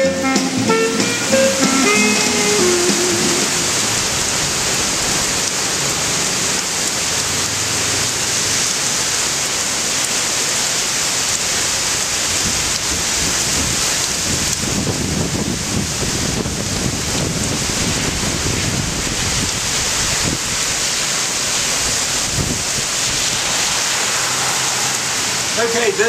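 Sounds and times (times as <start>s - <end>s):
heavy rain hiss: 0.0s - 26.0s
low wind rumble: 21.4s - 26.0s.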